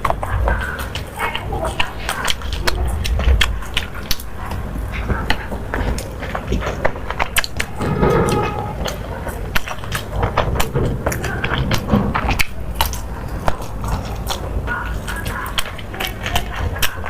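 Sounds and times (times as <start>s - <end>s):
chewing with wet mouth clicks: 0.0s - 17.0s
low rumble: 2.3s - 15.1s.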